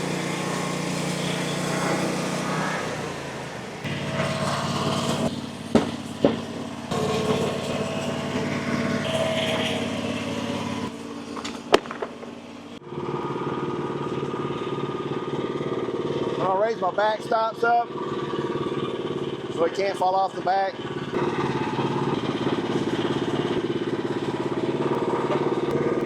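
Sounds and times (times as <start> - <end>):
sawmill engine running: 0.0 - 26.0
sharp knocks: 5.7 - 7.7, 11.4 - 12.4.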